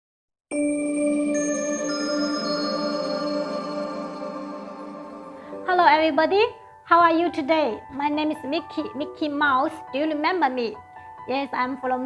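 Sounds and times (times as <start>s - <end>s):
chime-like intro music: 0.5s - 5.7s
high bell notes: 0.5s - 5.7s.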